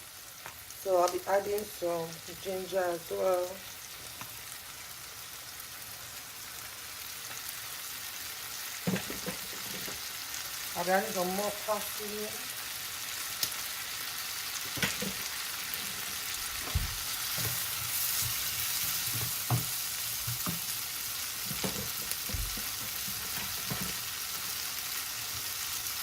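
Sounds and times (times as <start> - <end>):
vegetables sizzling in a wok: 0.0 - 26.0
utensil scraping a pan: 8.9 - 10.1, 14.7 - 20.8, 21.4 - 24.5.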